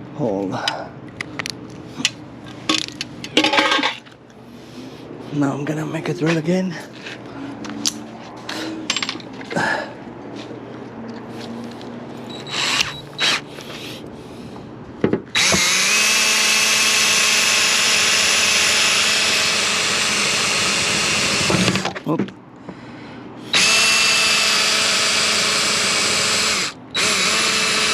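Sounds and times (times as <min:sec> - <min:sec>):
handling clicks and knocks: 0:01.1 - 0:04.2
electric drill whining: 0:12.3 - 0:13.4, 0:15.3 - 0:22.0, 0:23.5 - 0:27.9.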